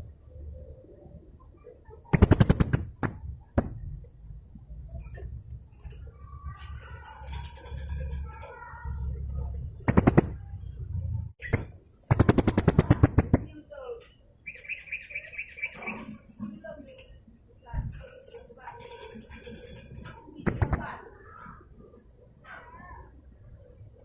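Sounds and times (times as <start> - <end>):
soft bird twittering: 14.4 - 16.2.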